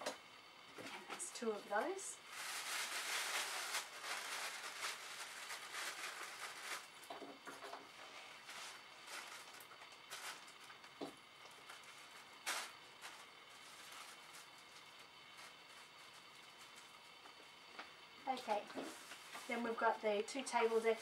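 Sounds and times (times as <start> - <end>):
paper and plastic rustling: 2.2 - 10.9, 11.6 - 17.0, 18.5 - 19.8.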